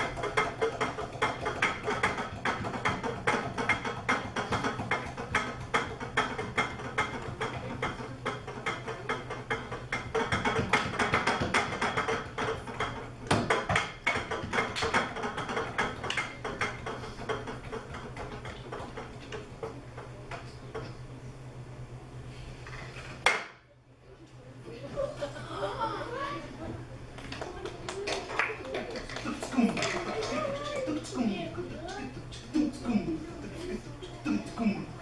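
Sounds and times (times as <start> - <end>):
cups tapped and slapped rhythmically: 0.0 - 20.9, 27.2 - 33.6.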